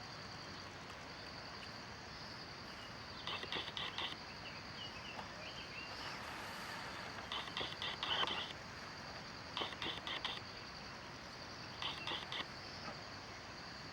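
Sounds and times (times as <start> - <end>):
soft even hiss: 0.0 - 13.1
high-pitched insect drone: 6.0 - 8.6, 11.8 - 12.5
bird chirps: 11.8 - 12.4.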